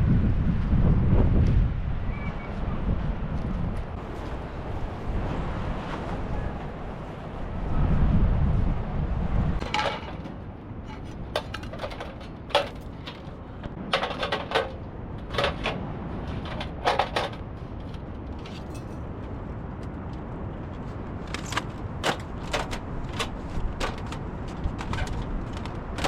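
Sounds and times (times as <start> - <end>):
hard objects clicking and clattering: 9.6 - 19.0, 21.2 - 26.0.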